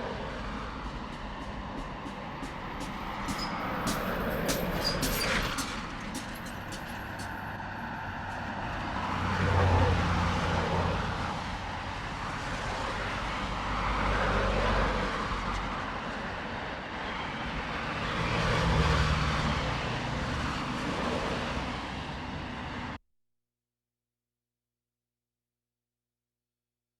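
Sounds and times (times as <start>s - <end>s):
vehicles passing: 0.0s - 23.0s
heavy vehicle engine hum: 0.1s - 12.3s
tyre and engine hum: 0.6s - 11.6s.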